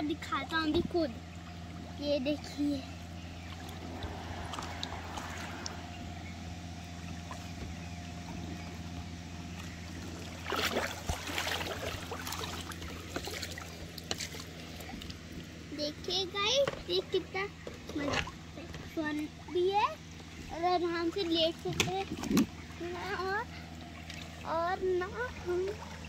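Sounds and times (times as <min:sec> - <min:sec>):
steady low hum: 0:00.0 - 0:26.0
water splashing from oar: 0:09.5 - 0:15.4.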